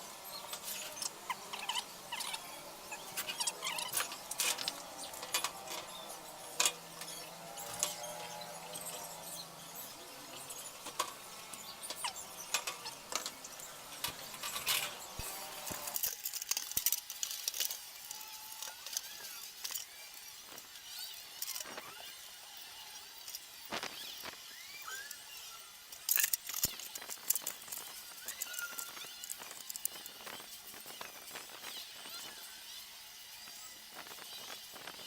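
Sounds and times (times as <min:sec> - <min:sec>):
tools clicking and clinking: 0:00.5 - 0:09.2, 0:10.3 - 0:20.0, 0:25.9 - 0:30.2.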